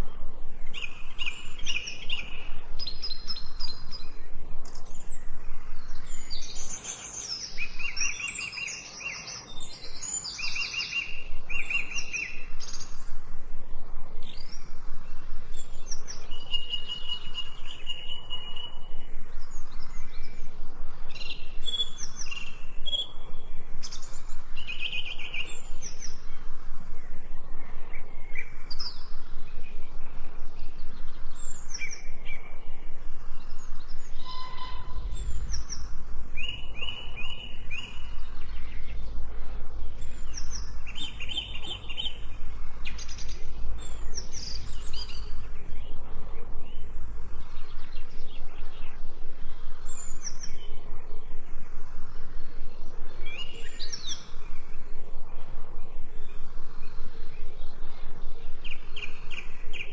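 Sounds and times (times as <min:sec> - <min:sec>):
background hiss: 0:00.0 - 0:59.9
songbirds chirping and trilling: 0:00.0 - 0:59.9
low rumble: 0:25.6 - 0:53.3.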